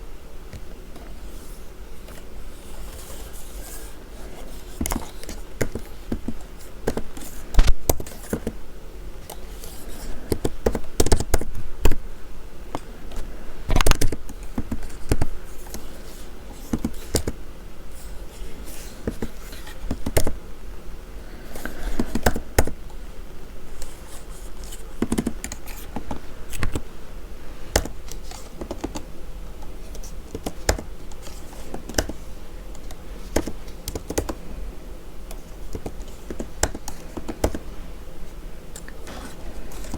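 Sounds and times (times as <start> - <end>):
keyboard typing: 24.7 - 26.8, 32.8 - 34.4.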